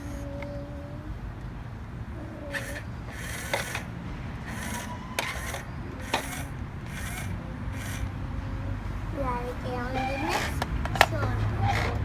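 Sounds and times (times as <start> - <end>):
plastic toy scraping: 2.3 - 8.1, 9.4 - 12.0
sharp plastic clicks: 2.4 - 8.2, 10.2 - 12.0.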